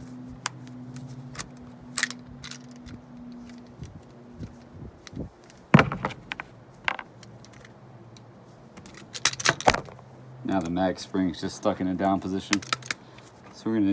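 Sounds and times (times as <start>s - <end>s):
pistol metal clicks and clacks: 6.3s - 10.0s, 12.4s - 13.0s.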